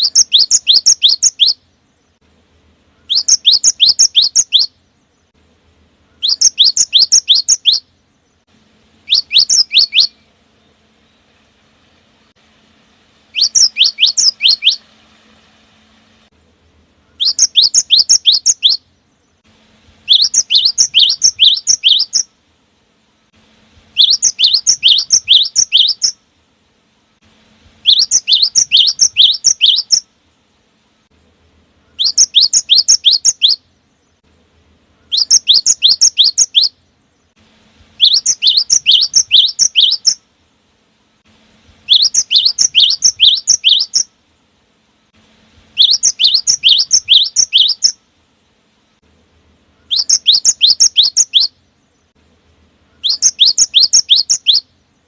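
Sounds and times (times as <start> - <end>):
bird whistled song: 0.0 - 2.2, 2.9 - 5.3, 6.0 - 8.4, 9.0 - 11.4, 13.3 - 15.0, 17.0 - 19.4, 20.0 - 22.4, 23.9 - 26.2, 27.8 - 30.1, 31.8 - 34.2, 35.0 - 37.3, 38.0 - 40.2, 41.8 - 44.1, 45.7 - 48.0, 49.8 - 52.1, 52.8 - 55.0.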